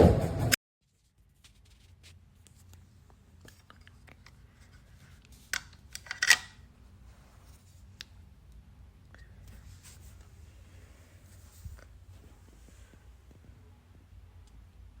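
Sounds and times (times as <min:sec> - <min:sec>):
faint room hum: 0:00.0 - 0:15.0.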